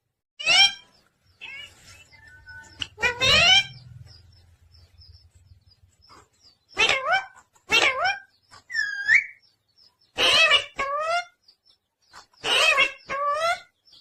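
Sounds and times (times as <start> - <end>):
parrot harsh calls: 0.4 - 1.8, 2.9 - 3.8, 6.8 - 9.4, 10.2 - 11.3, 12.4 - 13.7.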